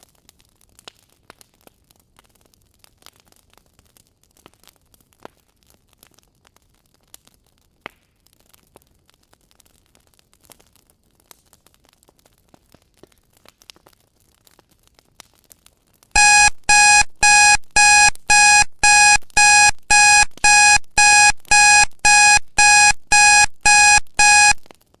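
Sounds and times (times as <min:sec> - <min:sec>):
alarm clock beeping: 0:16.2 - 0:24.6.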